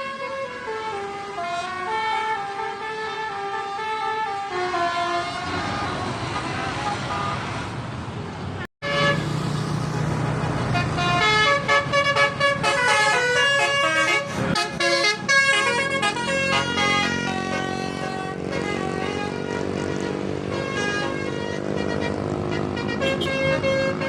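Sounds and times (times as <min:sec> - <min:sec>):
multi-tone air horn tune: 0:08.8 - 0:09.4, 0:10.4 - 0:24.0.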